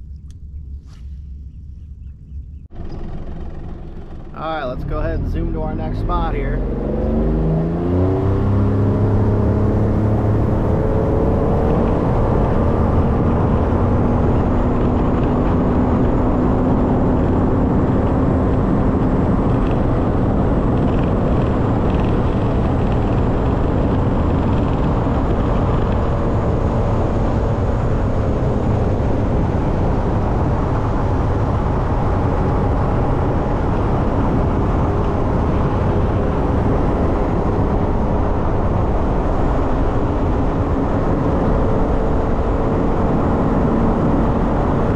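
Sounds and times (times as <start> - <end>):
outboard motor running: 1.4 - 6.4.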